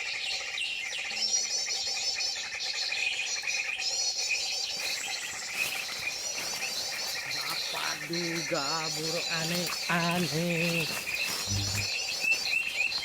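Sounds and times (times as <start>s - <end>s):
steady high hum of insects: 1.9s - 13.0s
high-pitched bird calls: 4.4s - 13.0s.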